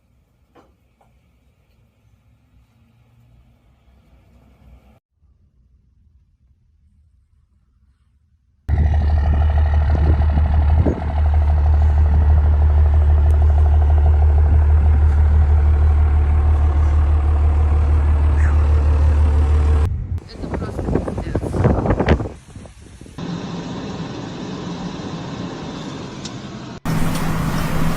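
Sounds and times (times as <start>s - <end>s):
vehicle engine running: 8.7s - 22.0s, 23.2s - 27.9s.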